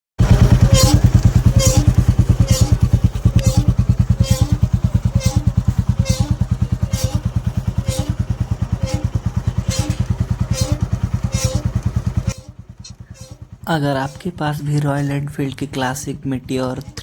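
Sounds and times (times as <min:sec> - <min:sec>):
brake scrape-squeal: 0:00.2 - 0:17.0
motorcycle engine idling: 0:00.2 - 0:17.0.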